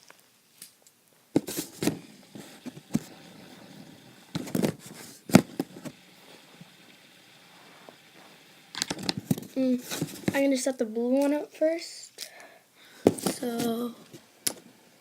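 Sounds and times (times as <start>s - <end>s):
fidget spinners knocking on box: 4.4s - 6.0s, 13.1s - 13.8s.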